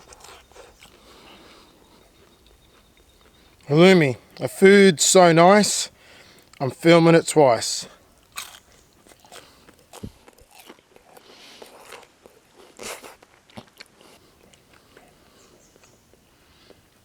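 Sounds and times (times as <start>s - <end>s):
person chewing crunchy food: 0.0s - 4.4s, 8.0s - 16.8s.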